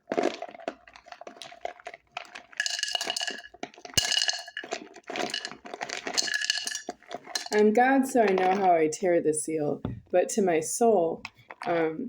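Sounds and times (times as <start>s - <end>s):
nuts rattling into a bowl: 0.0s - 8.8s.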